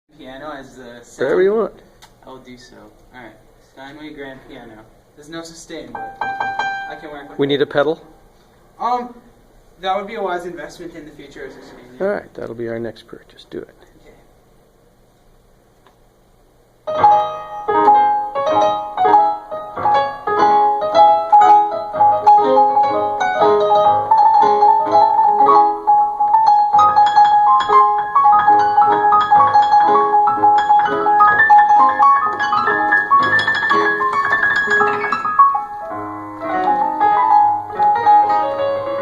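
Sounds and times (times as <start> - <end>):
electronic keyboard piano piece: 5.7 - 8.2, 16.8 - 39.0.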